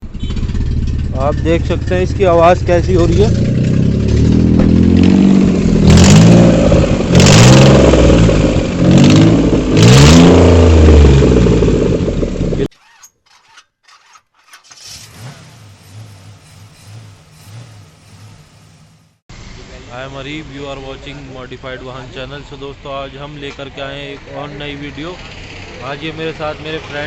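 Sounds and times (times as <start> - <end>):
car engine revving loudly: 1.8 - 12.7, 14.8 - 18.5.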